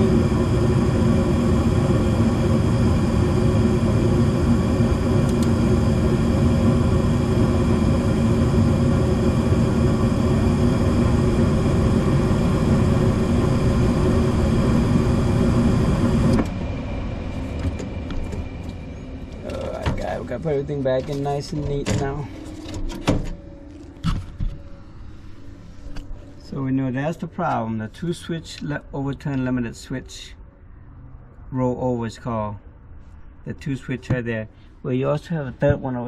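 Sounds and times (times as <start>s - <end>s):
gas furnace whirring: 0.0s - 28.6s
low hum: 0.0s - 31.7s.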